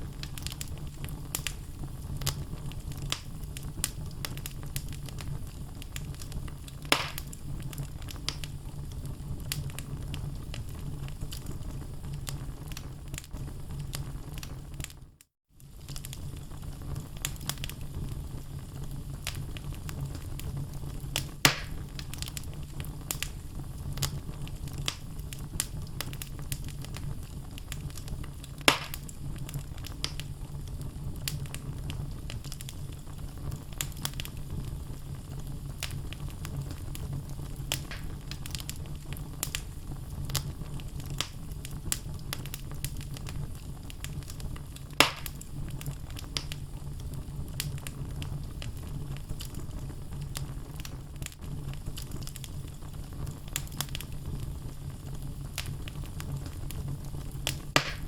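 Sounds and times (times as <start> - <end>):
logs crackling in fireplace: 0.0 - 58.0
low rumble of flame: 0.0 - 58.0
loud wood pops: 6.9 - 7.2, 21.5 - 21.8, 28.7 - 29.0, 37.8 - 38.1, 45.0 - 45.3, 57.8 - 58.0.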